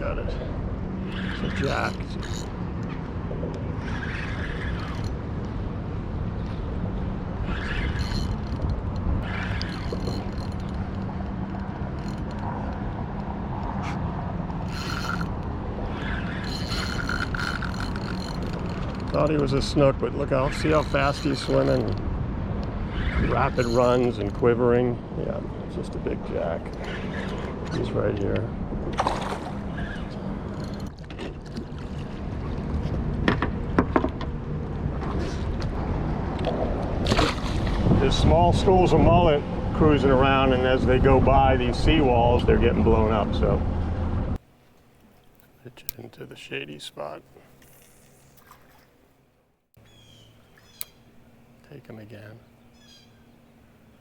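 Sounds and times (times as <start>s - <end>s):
low hum and rumble: 0.0s - 44.4s
fishing reel clicking and whirring: 1.0s - 2.9s, 3.8s - 5.6s, 7.4s - 22.0s, 22.6s - 24.4s, 29.9s - 31.0s.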